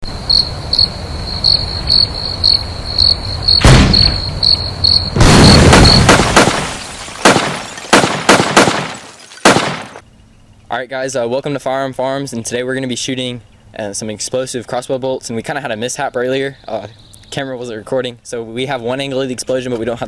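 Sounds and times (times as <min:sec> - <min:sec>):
crickets chirping: 0:00.0 - 0:10.0, 0:16.4 - 0:17.6
sharp thud: 0:03.6 - 0:04.4, 0:05.2 - 0:10.0
loud explosion: 0:03.6 - 0:10.0
sharp bangs: 0:03.6 - 0:10.0.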